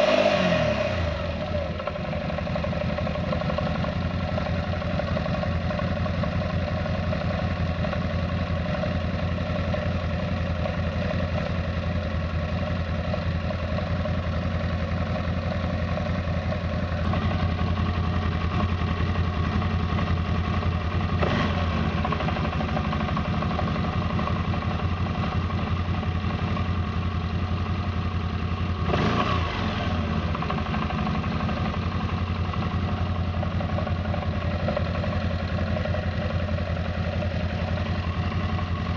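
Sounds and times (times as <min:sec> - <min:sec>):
engine revving: 0:00.0 - 0:01.7, 0:21.2 - 0:22.5, 0:28.7 - 0:31.3.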